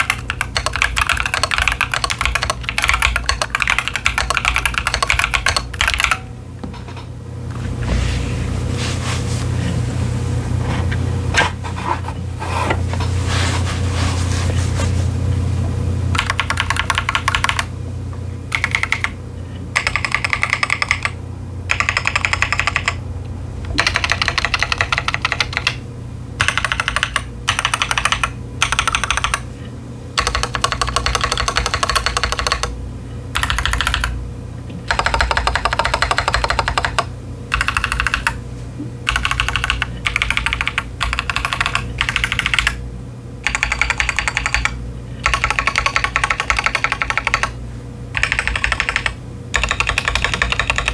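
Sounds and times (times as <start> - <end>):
mechanical keyboard typing: 0.0 - 6.2, 16.1 - 17.7, 18.5 - 19.2, 19.8 - 23.0, 23.7 - 25.8, 26.4 - 29.5, 30.2 - 34.2, 34.9 - 38.4, 39.1 - 42.8, 43.4 - 47.6, 48.2 - 50.9
steady low hum: 0.0 - 50.9.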